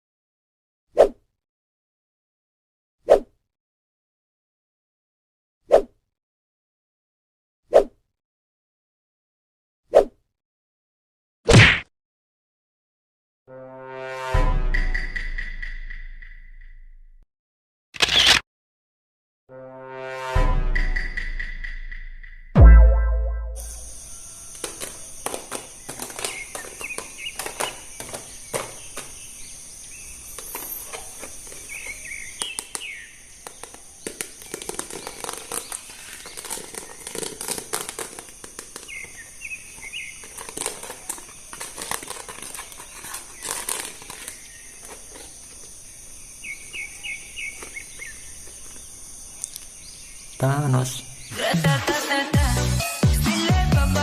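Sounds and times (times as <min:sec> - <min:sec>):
bird chirps: 0:14.9 - 0:16.8, 0:20.9 - 0:37.0, 0:38.8 - 0:41.6, 0:42.6 - 0:51.4
plastic packaging crinkling: 0:24.4 - 0:45.7.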